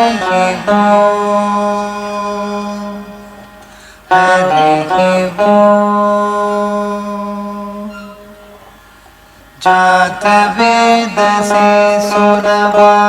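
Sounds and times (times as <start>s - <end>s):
plucked veena notes: 0.0s - 9.0s.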